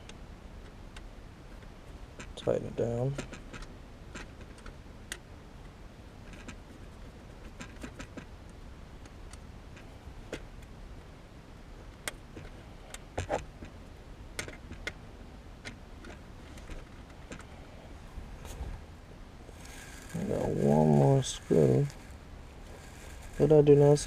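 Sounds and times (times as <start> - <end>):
screwdriver tightening screws: 19.6 - 23.7.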